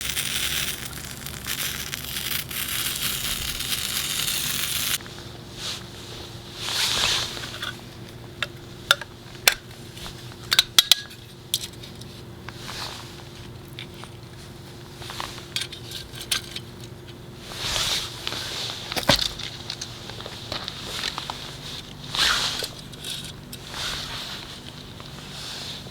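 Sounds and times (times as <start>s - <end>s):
dense crackling hiss: 0.0s - 7.6s, 16.8s - 25.9s
soft rustles: 5.0s - 10.5s, 11.8s - 25.9s.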